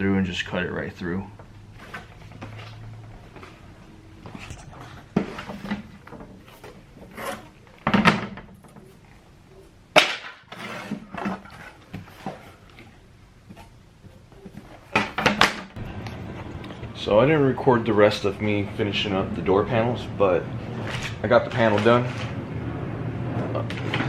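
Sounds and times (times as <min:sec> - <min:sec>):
tools being handled: 0:04.2 - 0:07.9.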